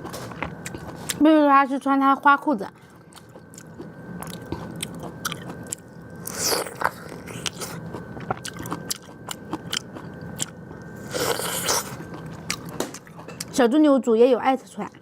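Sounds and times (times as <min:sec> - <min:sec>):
person chewing close up: 0:00.4 - 0:01.2, 0:02.9 - 0:13.5.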